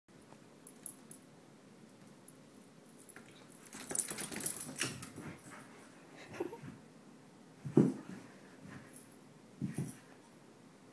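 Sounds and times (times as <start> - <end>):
dogs scuffling: 3.6 - 5.9.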